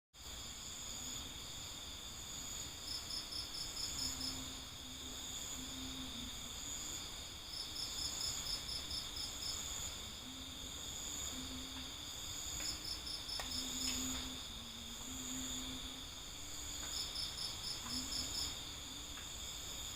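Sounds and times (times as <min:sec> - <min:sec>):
crickets trilling: 0:00.2 - 0:19.9
louder cricket chirps: 0:00.2 - 0:19.9.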